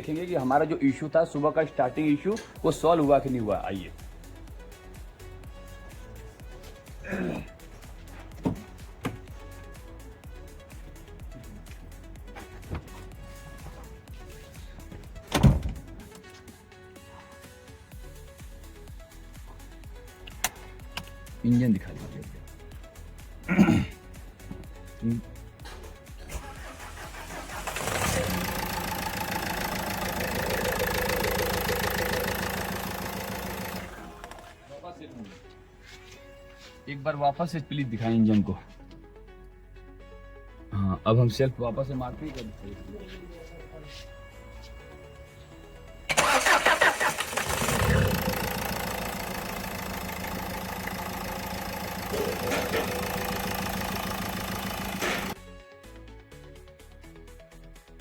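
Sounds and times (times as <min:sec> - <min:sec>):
diesel engine cranking and idling: 0:25.8 - 0:34.6, 0:45.8 - 0:55.4.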